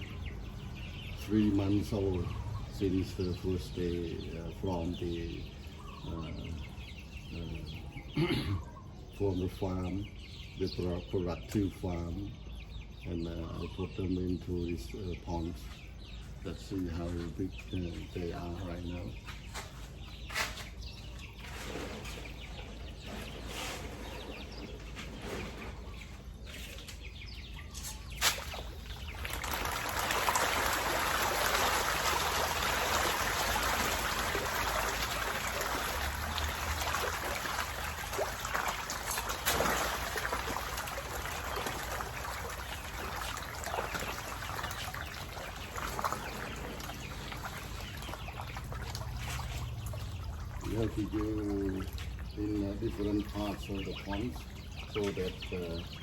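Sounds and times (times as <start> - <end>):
fish thrashing and splashing water: 28.1 - 53.0.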